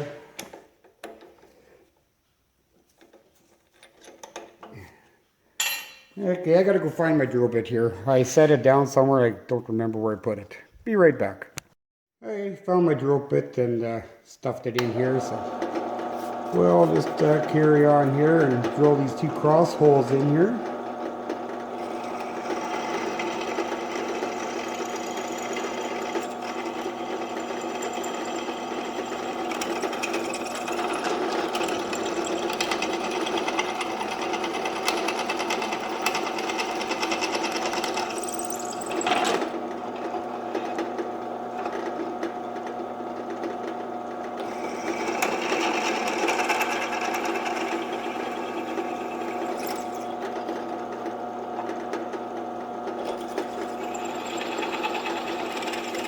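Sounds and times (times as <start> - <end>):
electric drill cutting steel: 15.1 - 40.9, 44.4 - 51.7, 53.0 - 56.0.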